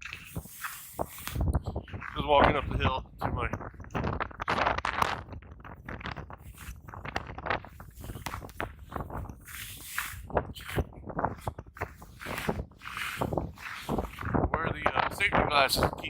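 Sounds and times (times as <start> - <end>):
strong wind: 0.0 - 16.0
clothing rustling: 6.4 - 14.5
footsteps on snow: 7.7 - 14.5.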